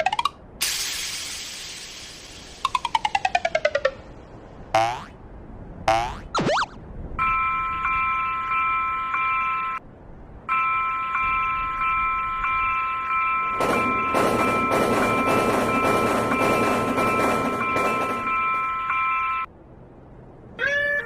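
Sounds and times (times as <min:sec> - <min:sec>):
train passing: 0:00.1 - 0:06.2, 0:06.8 - 0:20.6
railroad crossing bell ringing: 0:07.2 - 0:19.5.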